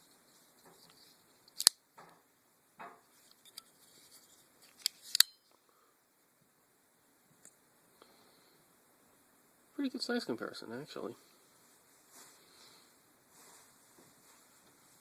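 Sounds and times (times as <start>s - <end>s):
soft scraping: 11.6s - 15.0s.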